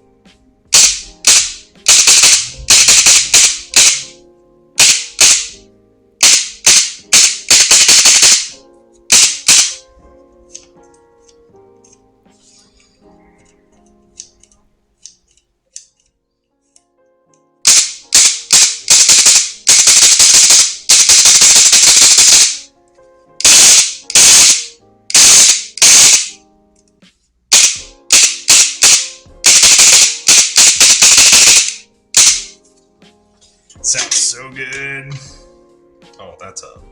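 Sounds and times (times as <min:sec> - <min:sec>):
electric airsoft gun firing: 0:00.7 - 0:04.1, 0:04.8 - 0:05.6, 0:06.2 - 0:09.8, 0:17.6 - 0:22.7, 0:23.4 - 0:26.4, 0:27.5 - 0:32.6.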